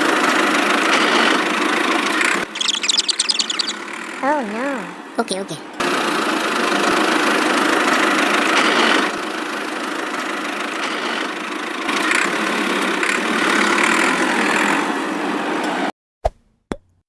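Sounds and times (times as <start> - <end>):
toy excavator mechanical drone: 0.0 - 4.3, 5.8 - 15.0.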